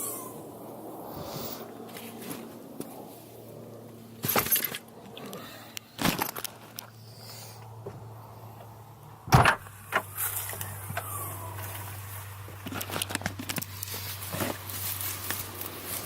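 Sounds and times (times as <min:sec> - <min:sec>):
steady low hum: 0:00.0 - 0:16.0
knocks and rattles: 0:09.3 - 0:10.1.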